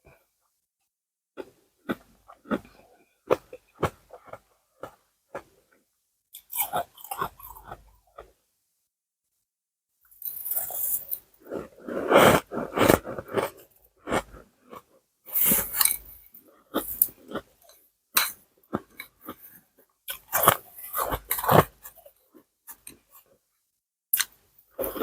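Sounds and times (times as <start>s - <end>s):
person chewing ice: 1.4s - 5.6s, 6.4s - 8.3s, 10.2s - 23.2s.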